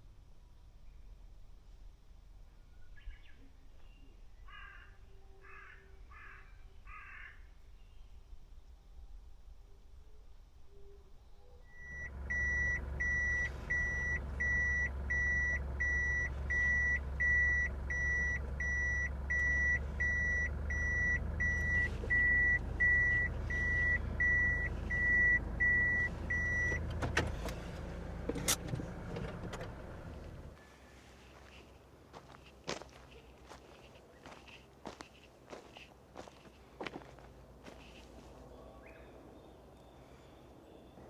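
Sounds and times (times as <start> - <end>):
reversing warning beeps: 11.7 - 26.8
van engine running: 11.8 - 30.6.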